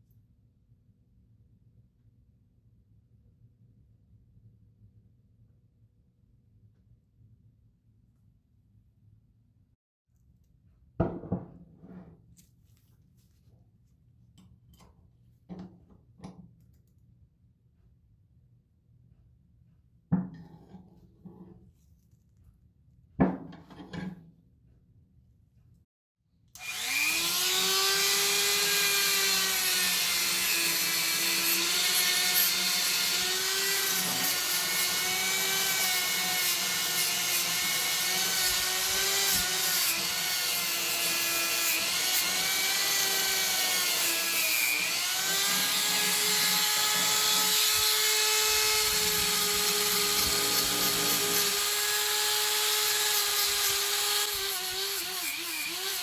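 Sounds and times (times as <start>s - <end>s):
rotary power tool whining: 26.6s - 56.0s.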